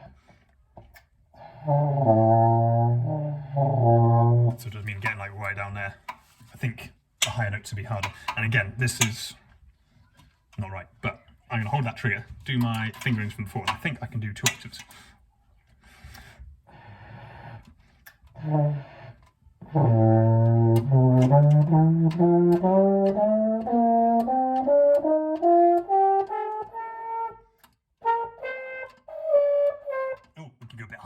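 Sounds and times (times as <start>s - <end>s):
french horn low note: 1.4s - 5.2s, 18.4s - 27.4s
french horn ascending scale: 1.4s - 5.7s, 18.4s - 27.4s.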